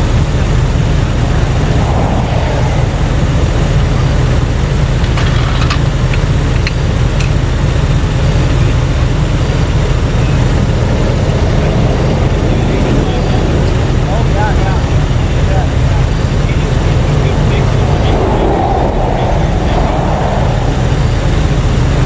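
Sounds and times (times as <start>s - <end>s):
heavy vehicle engine idling: 0.0s - 22.0s.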